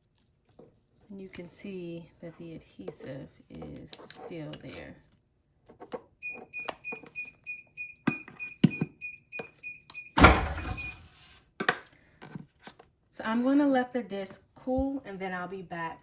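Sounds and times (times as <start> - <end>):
heat press timer beeping: 6.2 - 11.1
heat press opening clunk: 10.2 - 11.0.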